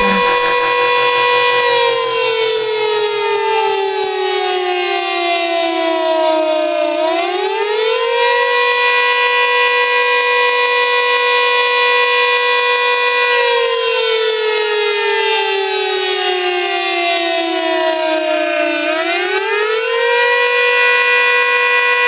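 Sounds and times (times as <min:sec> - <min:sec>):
warning siren wailing: 0:00.0 - 0:02.2.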